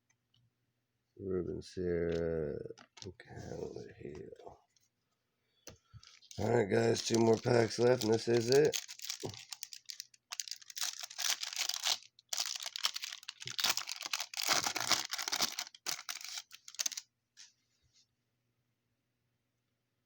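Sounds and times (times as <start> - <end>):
wrapper tearing and crinkling: 6.0 - 17.0.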